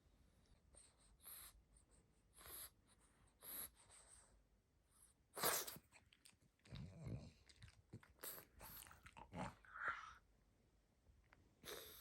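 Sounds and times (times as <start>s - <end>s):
dog snuffling breaths: 2.3s - 4.4s.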